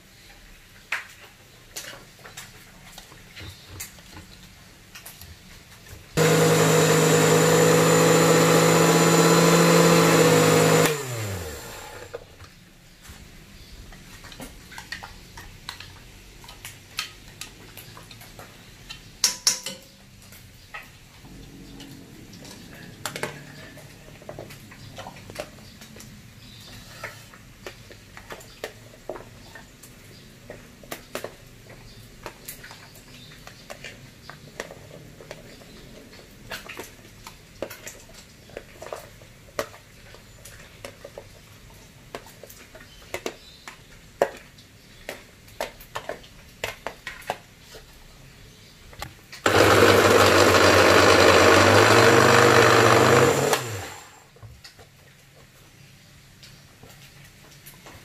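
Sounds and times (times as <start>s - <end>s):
utensils and cookware clinking: 19.2s - 20.5s.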